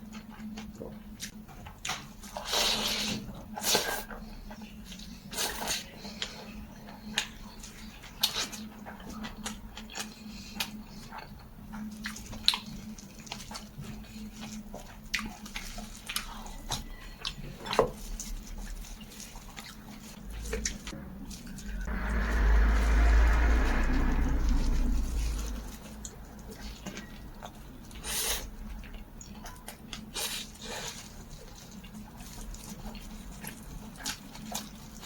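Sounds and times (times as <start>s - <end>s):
faint low hum: 3.3s - 35.0s
chewing with wet mouth clicks: 3.6s - 21.8s, 26.0s - 35.0s
steady rushing noise: 20.5s - 26.8s.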